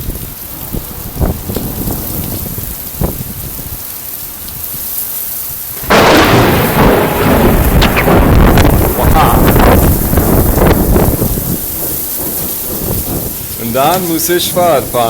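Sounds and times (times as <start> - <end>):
steady rain falling: 0.0 - 15.0
thunder crash and rumble: 5.8 - 15.0.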